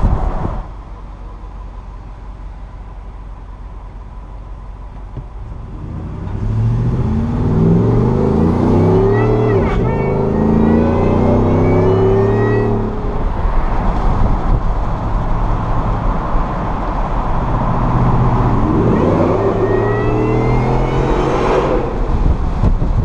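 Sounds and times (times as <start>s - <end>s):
supercharger whining: 3.6s - 23.0s
engine accelerating: 5.3s - 23.0s.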